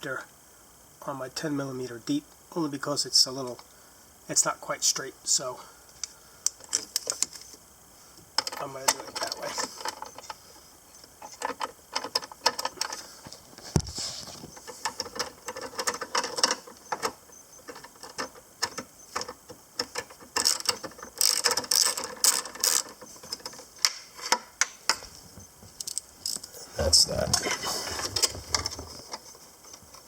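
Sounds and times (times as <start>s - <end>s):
ratchet clicking: 19.8s - 23.0s.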